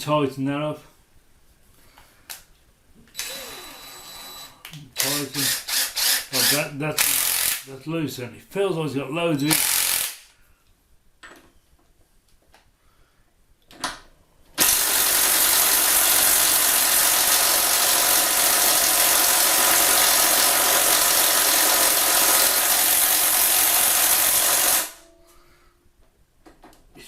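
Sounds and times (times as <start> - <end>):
impact wrench hammering: 14.6 - 25.1.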